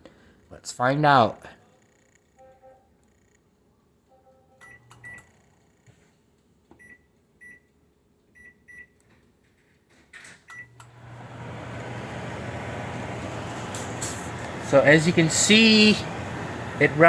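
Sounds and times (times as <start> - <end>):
microwave keypad beeps: 4.6 - 5.3, 6.8 - 7.7, 8.4 - 9.0, 10.5 - 10.8
microwave hum and fan: 4.6 - 9.2, 10.4 - 17.0.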